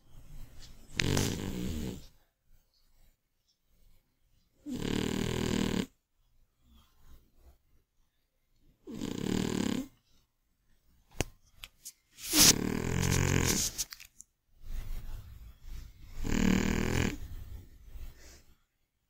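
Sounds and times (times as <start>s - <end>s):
cat snoring loudly: 0.9s - 2.0s, 4.6s - 5.9s, 8.8s - 9.9s, 12.4s - 13.6s, 16.2s - 17.4s.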